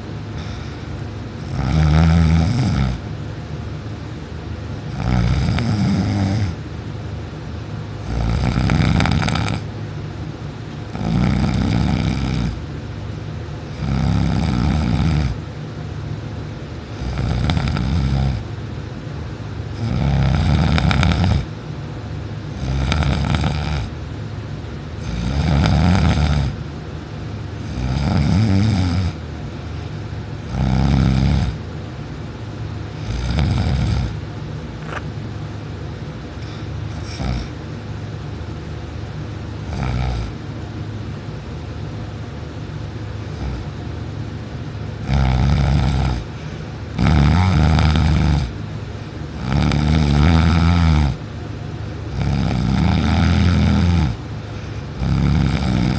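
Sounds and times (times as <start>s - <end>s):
person snoring loudly: 1.4s - 3.0s, 4.9s - 6.6s, 8.0s - 9.7s, 10.9s - 12.6s, 13.7s - 15.4s, 16.9s - 18.4s, 19.7s - 21.5s, 22.6s - 23.9s, 25.0s - 26.6s, 27.6s - 29.2s, 30.4s - 31.6s, 33.0s - 34.2s, 36.4s - 37.5s, 39.7s - 40.4s, 45.0s - 46.3s, 47.0s - 48.5s, 49.4s - 51.2s, 52.1s - 54.2s, 54.9s - 55.9s.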